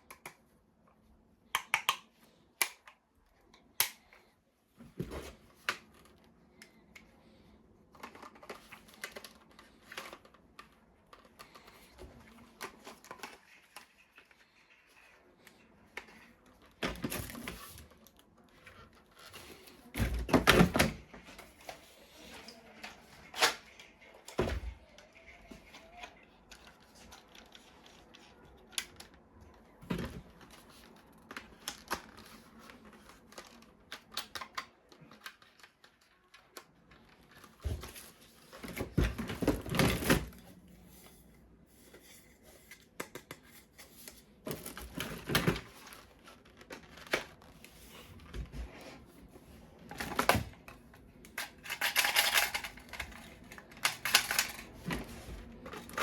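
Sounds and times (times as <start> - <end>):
plastic toy clicks and taps: 1.5 - 3.0
rapid plastic clattering: 49.9 - 56.0.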